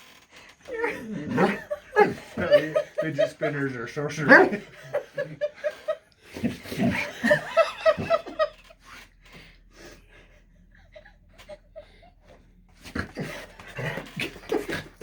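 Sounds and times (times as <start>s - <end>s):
high-pitched laughter: 0.7s - 8.8s
faint chuckles and breaths: 4.6s - 15.0s.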